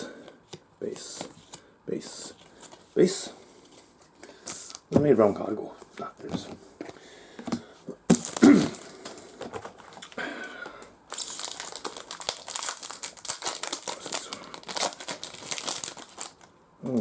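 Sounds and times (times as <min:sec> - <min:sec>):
foil wrapper crinkling: 0:11.1 - 0:16.5
foil wrapper tearing: 0:11.1 - 0:16.5.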